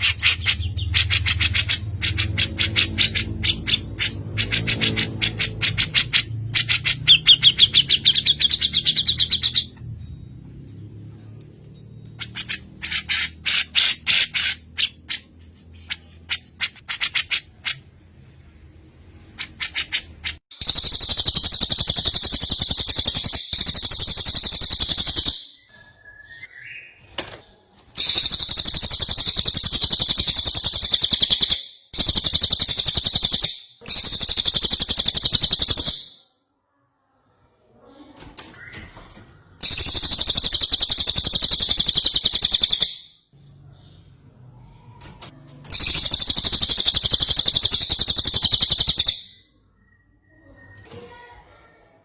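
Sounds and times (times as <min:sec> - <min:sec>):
bird chirping sharply: 0:00.0 - 0:09.9, 0:28.0 - 0:36.4, 0:38.6 - 0:44.9, 0:45.7 - 0:50.8.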